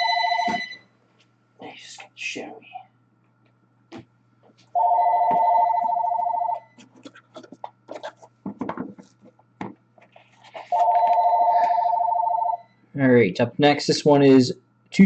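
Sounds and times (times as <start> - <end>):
telephone ringing: 0.0 - 0.9, 4.8 - 6.8, 10.7 - 12.8.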